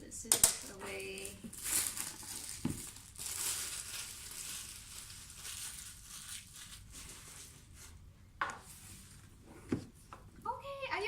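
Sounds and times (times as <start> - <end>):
plastic wrap crinkling and tearing: 0.8 - 7.8.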